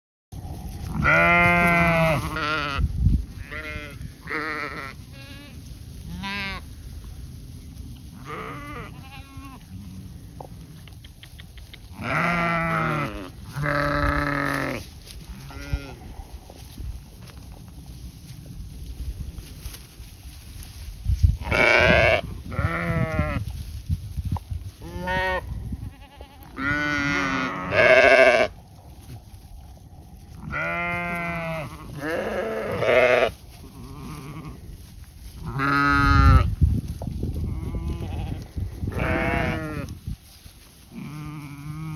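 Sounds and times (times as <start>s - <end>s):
goats and sheep bleating: 0.8s - 6.8s, 8.0s - 10.2s, 11.8s - 16.7s, 21.4s - 23.6s, 24.8s - 28.6s, 30.2s - 36.6s, 37.4s - 41.9s.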